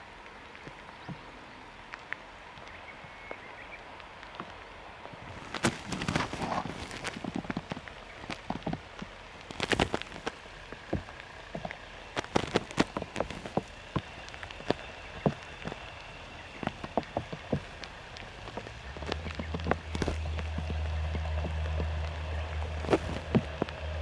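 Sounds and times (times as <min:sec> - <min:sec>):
irregular taps like raindrops: 0:00.0 - 0:24.0
steady low rumble: 0:13.7 - 0:24.0.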